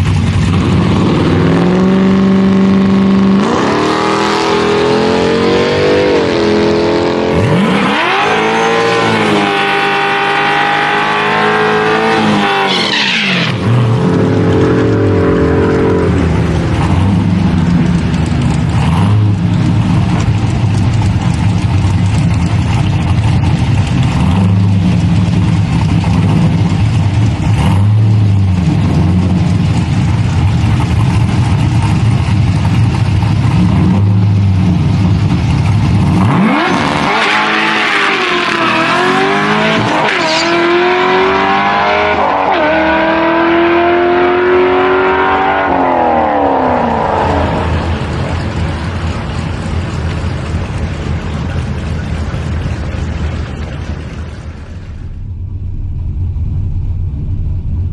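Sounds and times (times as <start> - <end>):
race car engine idling: 0.0 - 1.0, 13.8 - 36.3, 47.2 - 57.9
race car accelerating through gears: 0.6 - 17.4, 36.0 - 48.2.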